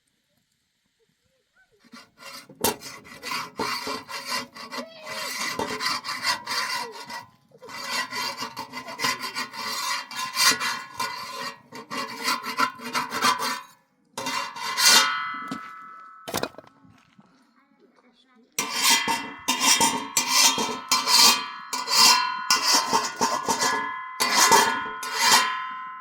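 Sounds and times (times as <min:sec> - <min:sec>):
rapid rasping scraping: 0:01.9 - 0:16.6, 0:18.6 - 0:25.7
metallic clang: 0:14.2 - 0:16.7, 0:18.6 - 0:26.0.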